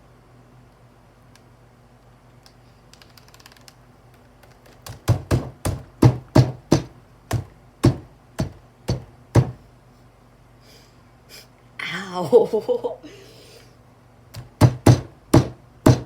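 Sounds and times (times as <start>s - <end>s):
loud smacks on bare keys: 4.8s - 9.6s, 14.4s - 16.0s.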